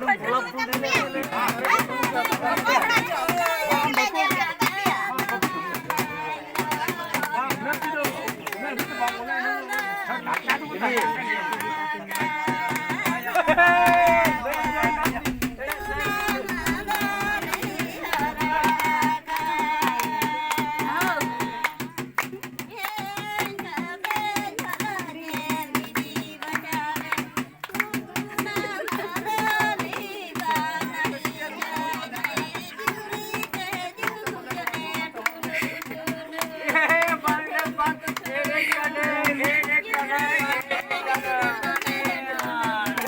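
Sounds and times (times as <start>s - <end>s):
fast dense drum beat: 0.7s - 9.0s, 12.2s - 43.0s
person singing: 0.9s - 22.0s.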